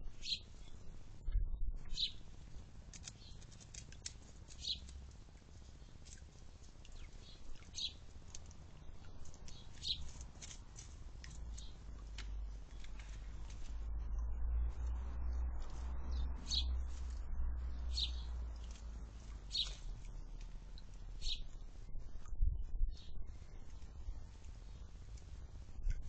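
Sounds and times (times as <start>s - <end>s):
low rumble: 0.0s - 2.8s, 11.1s - 26.0s
birds chirping: 0.1s - 1.0s, 1.8s - 2.3s, 4.5s - 10.4s, 11.2s - 20.5s, 21.1s - 21.6s.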